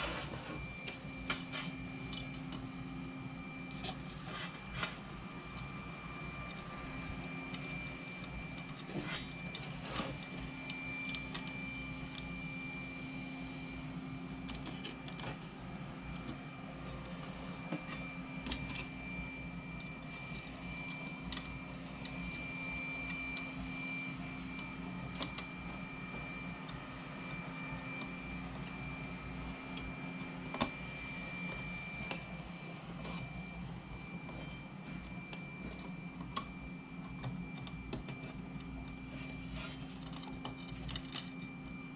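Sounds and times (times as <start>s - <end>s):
faint high whine: 0.0s - 41.9s
small parts clicking and tapping: 39.6s - 41.6s.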